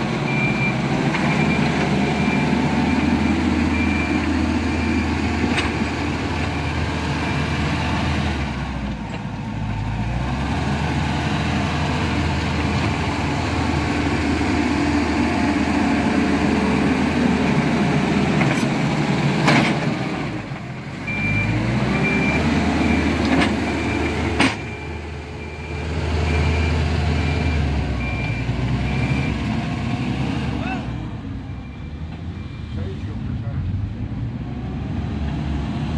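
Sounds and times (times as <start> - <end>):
diesel machine engines under load: 0.0 - 35.9
reversing alarm beeping: 0.2 - 5.4, 21.0 - 29.5, 31.4 - 32.8.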